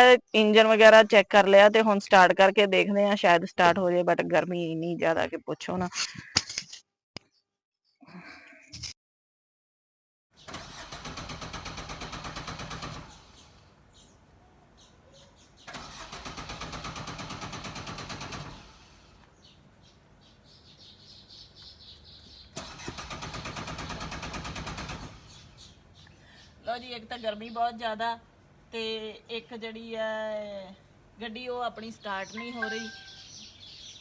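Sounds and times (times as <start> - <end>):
starter motor cranking engine: 10.4 - 13.7, 15.6 - 19.2, 22.5 - 25.8.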